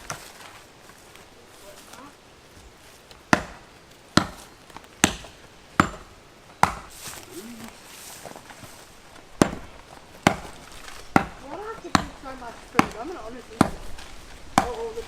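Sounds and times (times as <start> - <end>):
axe chopping wooden stick: 3.3 - 7.0, 9.4 - 15.0.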